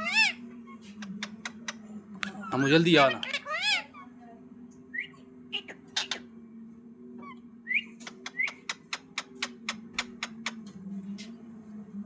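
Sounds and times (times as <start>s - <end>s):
parrot chirping: 0.0s - 0.4s, 1.2s - 4.1s, 5.0s - 6.2s.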